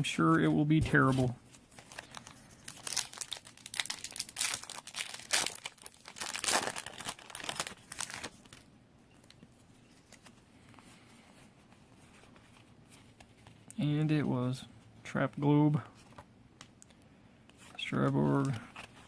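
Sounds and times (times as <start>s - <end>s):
foil wrapper tearing and crinkling: 1.8s - 8.7s.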